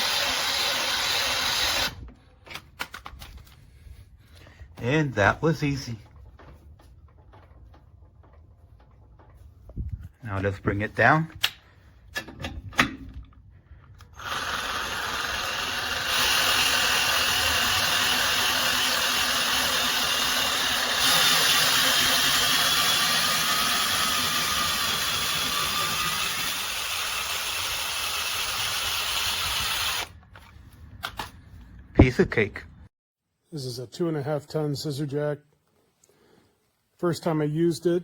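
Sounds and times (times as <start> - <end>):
power drill running: 0.0 - 2.0, 14.0 - 30.2.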